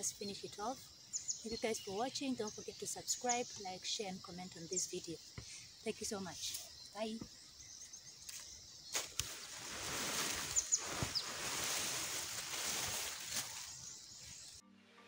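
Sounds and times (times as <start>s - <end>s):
high bird chirps: 6.4s - 14.6s.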